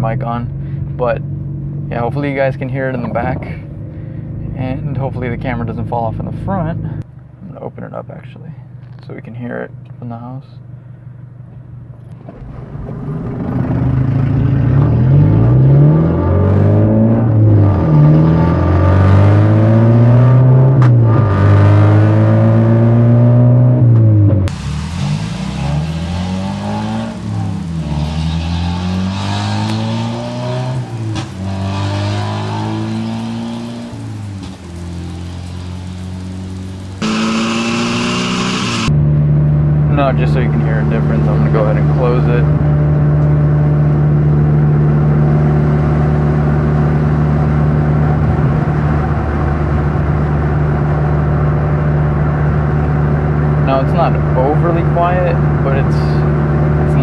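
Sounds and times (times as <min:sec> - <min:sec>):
car engine accelerating: 0:11.9 - 0:57.0.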